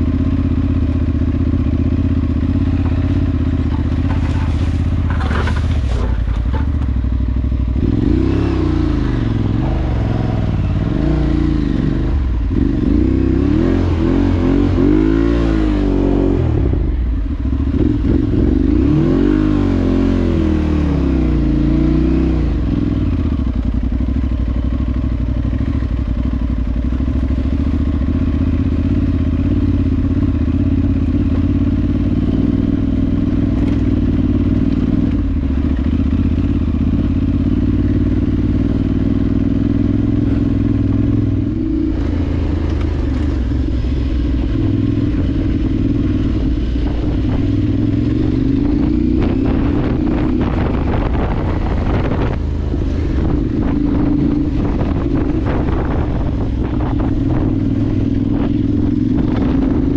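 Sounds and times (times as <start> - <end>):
motorcycle engine revving: 0.0 - 59.9
clatter: 1.9 - 7.9, 23.3 - 40.9.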